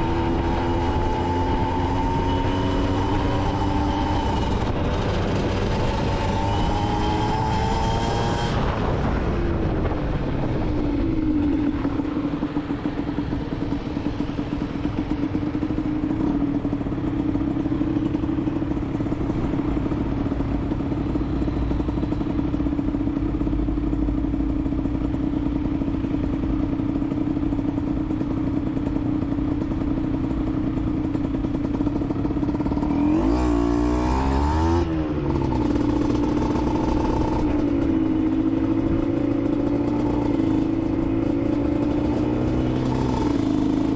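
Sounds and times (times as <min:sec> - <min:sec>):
motorcycle engine revving: 0:00.0 - 0:43.9
wind and road noise: 0:00.0 - 0:43.9.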